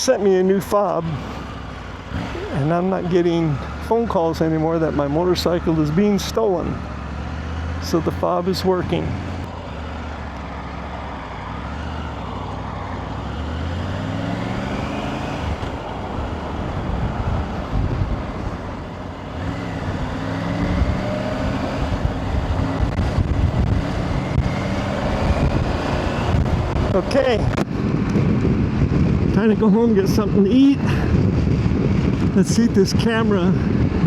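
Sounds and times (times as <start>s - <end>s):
motorcycle engine idling and revving: 0.0s - 34.0s.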